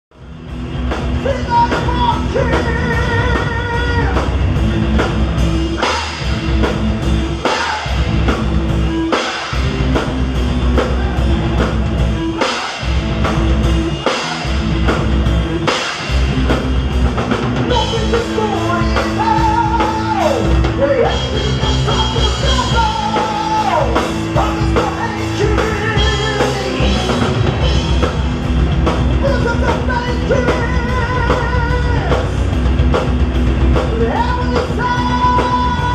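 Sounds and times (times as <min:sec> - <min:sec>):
heavy metal band playing: 0:00.1 - 0:35.9
person singing: 0:01.2 - 0:04.3, 0:17.7 - 0:27.8, 0:29.1 - 0:32.4, 0:33.9 - 0:35.9.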